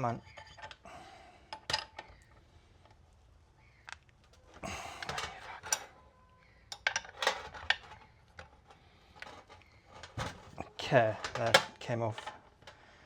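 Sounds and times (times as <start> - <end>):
metal spanners clinking: 0.0 - 0.9, 4.4 - 6.0, 6.7 - 12.8
scraping rattle: 4.4 - 5.9, 6.7 - 12.8.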